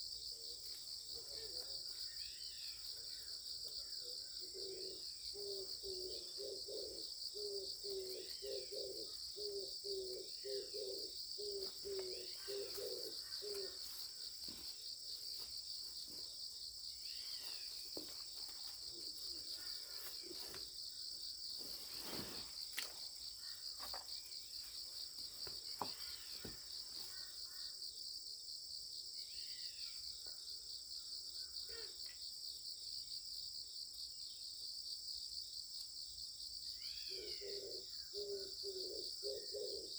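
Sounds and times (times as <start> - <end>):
insects chorus: 0.0 - 39.9
birds chirping: 4.3 - 14.8.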